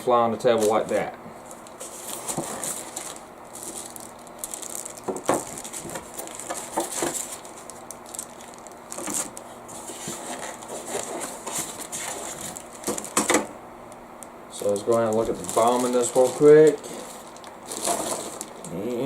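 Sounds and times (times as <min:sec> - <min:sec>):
computer case parts clicking and rattling: 0:01.9 - 0:07.6, 0:08.3 - 0:13.5, 0:14.6 - 0:18.7.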